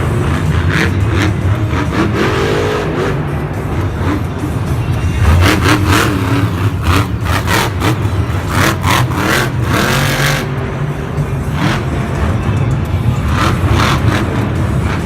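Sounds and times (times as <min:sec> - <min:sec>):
truck engine revving: 0:00.0 - 0:15.0.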